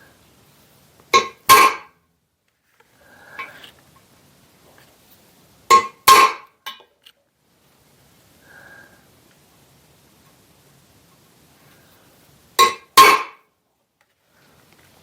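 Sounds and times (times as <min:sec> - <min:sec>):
hammer striking metal punch: 0:01.2 - 0:01.9, 0:05.7 - 0:06.8, 0:12.6 - 0:13.4.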